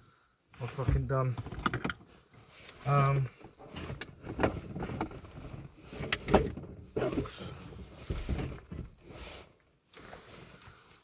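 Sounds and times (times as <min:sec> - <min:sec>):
rustling inside a car: 0:00.0 - 0:11.0.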